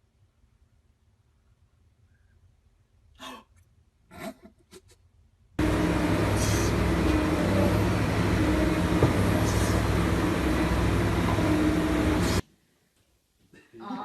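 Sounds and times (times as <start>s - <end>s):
engine droning: 5.6s - 12.4s.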